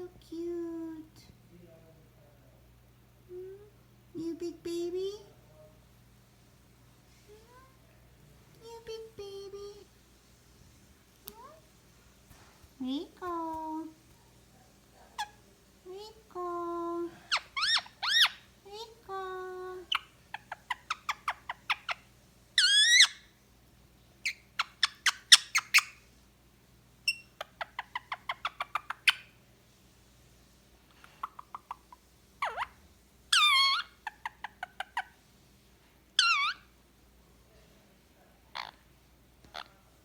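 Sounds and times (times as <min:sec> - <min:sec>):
parrot warbling calls: 0:15.2 - 0:15.4, 0:17.2 - 0:18.5, 0:19.9 - 0:23.3, 0:24.2 - 0:26.0, 0:27.0 - 0:29.4, 0:31.1 - 0:35.2, 0:36.2 - 0:36.7, 0:38.5 - 0:38.8.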